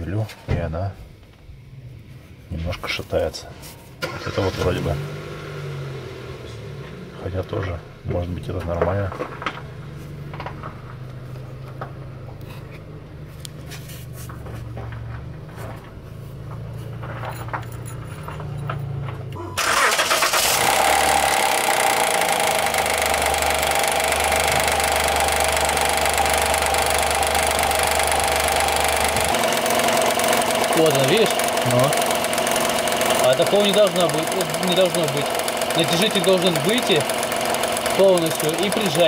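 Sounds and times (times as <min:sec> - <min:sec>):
car engine starting and running: 0:01.2 - 0:39.0
engine knocking: 0:19.7 - 0:39.0.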